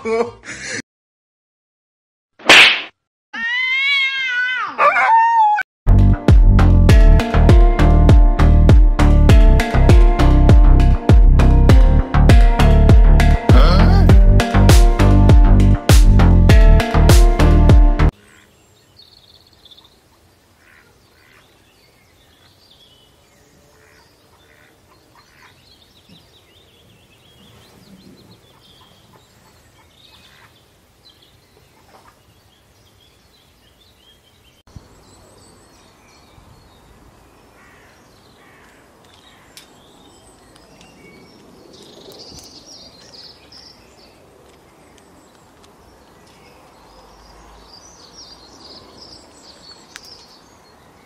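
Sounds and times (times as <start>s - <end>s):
loud music: 5.9s - 18.1s.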